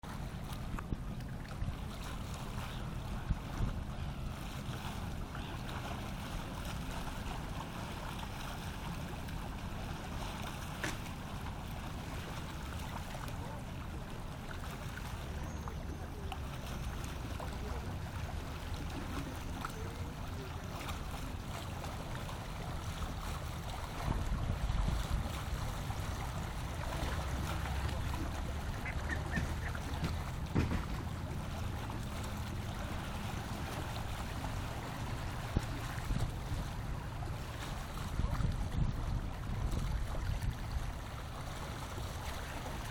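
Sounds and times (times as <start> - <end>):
wind rumbling on microphone: 0.0 - 11.4, 21.3 - 42.9
lapping lake water: 0.0 - 42.9
faint short bird calls: 28.8 - 29.9.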